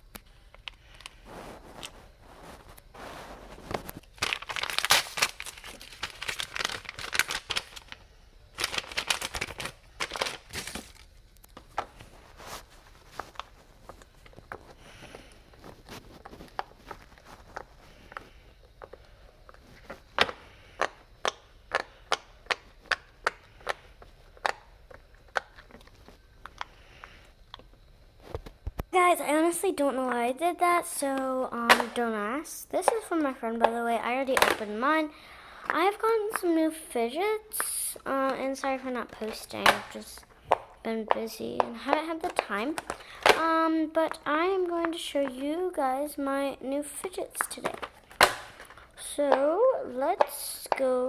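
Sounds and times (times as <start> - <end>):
packaging crinkling and tearing: 0.5 - 27.2, 34.3 - 34.7, 38.6 - 45.5, 47.4 - 49.0.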